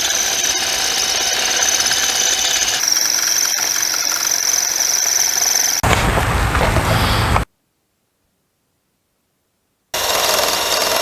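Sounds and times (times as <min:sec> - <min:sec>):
power drill whining: 0:00.0 - 0:07.5, 0:10.0 - 0:11.0.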